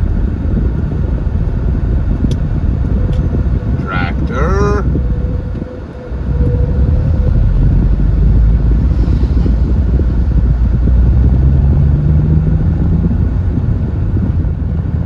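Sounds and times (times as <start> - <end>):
engine and road noise in cabin: 0.0 - 15.0
rising engine note: 1.7 - 13.6.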